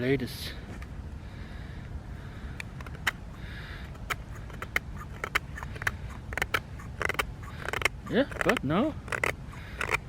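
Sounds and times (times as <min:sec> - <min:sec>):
knife shaving wood: 0:03.9 - 0:10.0.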